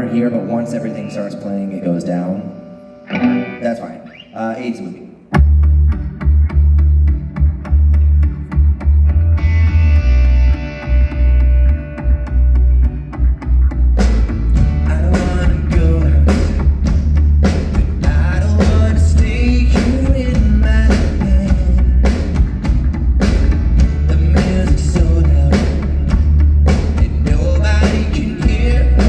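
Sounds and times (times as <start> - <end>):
live rock band playing: 0.0 - 4.2, 5.3 - 29.0
drum kit beat: 12.0 - 29.0.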